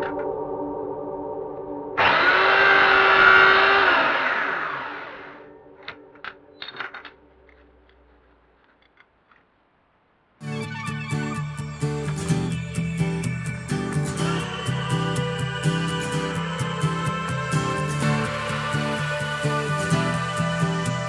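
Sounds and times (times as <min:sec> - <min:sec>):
power tool running: 0:02.0 - 0:05.5, 0:14.1 - 0:21.0.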